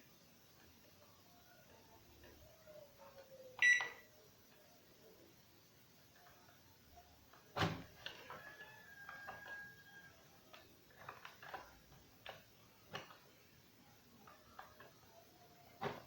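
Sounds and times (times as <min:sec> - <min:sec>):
faint steady tone: 0:00.0 - 0:07.4.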